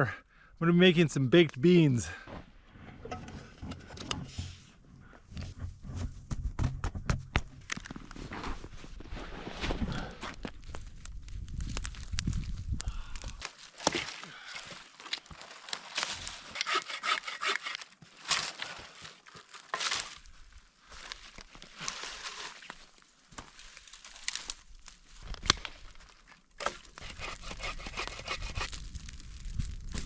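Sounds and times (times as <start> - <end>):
rustling and crinkling: 2.3 - 16.5, 17.8 - 27.2.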